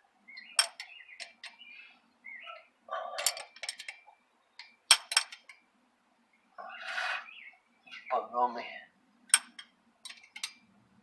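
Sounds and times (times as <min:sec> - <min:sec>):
metal hand tools clinking on bolts: 0:00.6 - 0:01.6, 0:03.2 - 0:04.0, 0:04.9 - 0:05.5, 0:09.3 - 0:10.6.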